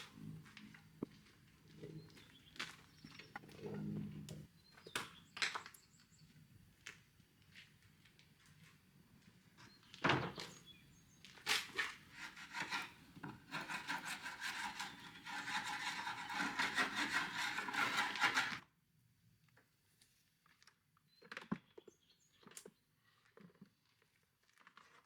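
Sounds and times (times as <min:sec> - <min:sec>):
hand tool rubbing wood: 0:11.7 - 0:18.6.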